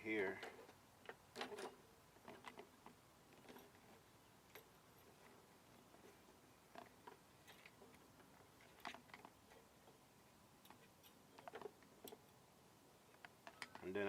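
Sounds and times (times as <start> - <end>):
rubber fuel line clicks and crackles: 13.1 - 14.0.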